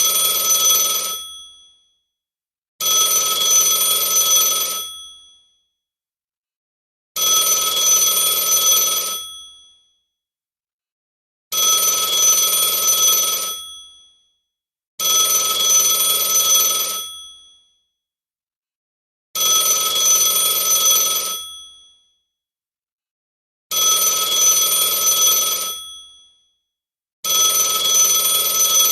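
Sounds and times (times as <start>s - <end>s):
telephone ringing: 0.0s - 1.4s, 2.9s - 5.0s, 11.5s - 13.8s, 15.0s - 17.2s, 19.5s - 21.6s, 23.9s - 26.0s.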